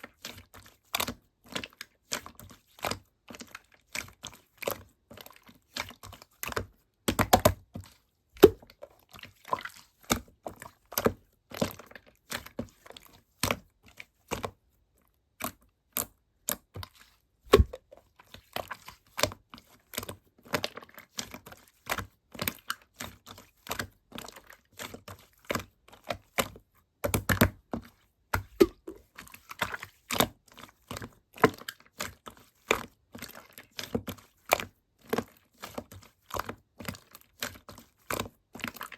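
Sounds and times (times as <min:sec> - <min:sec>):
hands squishing slime: 0:00.0 - 0:14.7, 0:15.4 - 0:38.9
sharp clicks and pops: 0:17.5 - 0:17.8, 0:28.4 - 0:29.0.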